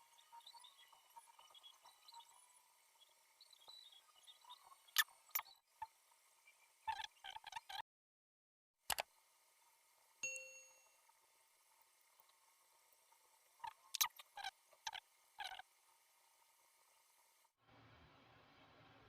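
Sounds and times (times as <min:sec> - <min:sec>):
small clicks and taps of tools: 0:08.9 - 0:09.1
bright metallic ding: 0:10.2 - 0:11.0.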